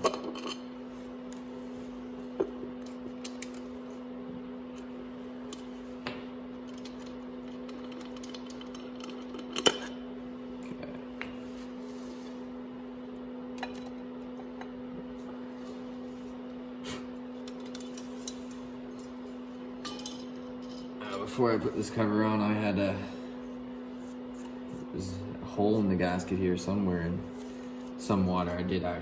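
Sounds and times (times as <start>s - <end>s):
steady low hum: 0.0s - 29.0s
metal tools clinking: 19.8s - 20.9s.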